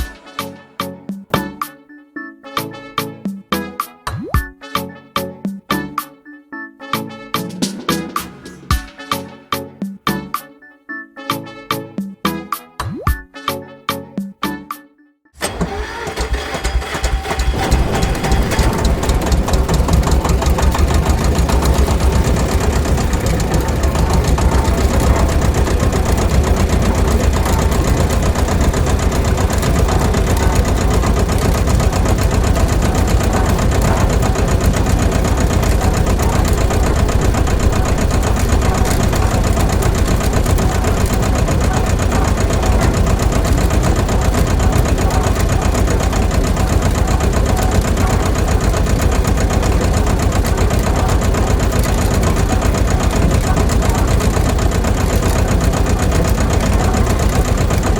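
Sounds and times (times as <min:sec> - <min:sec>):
small motor running: 0:15.4 - 0:57.9
fast fine rattle: 0:16.0 - 0:57.9.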